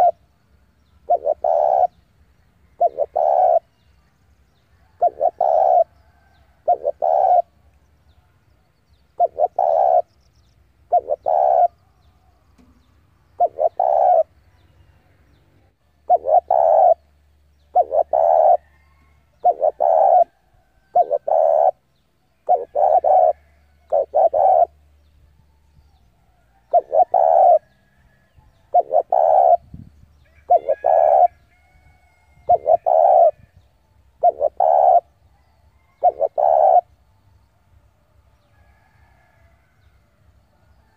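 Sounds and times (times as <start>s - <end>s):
dove cooing: 0.0s - 0.3s, 1.0s - 2.0s, 2.6s - 3.8s, 4.8s - 7.6s, 9.2s - 10.1s, 10.8s - 12.3s, 13.4s - 14.4s, 15.9s - 21.8s, 22.4s - 24.9s, 26.2s - 33.6s, 34.2s - 37.0s.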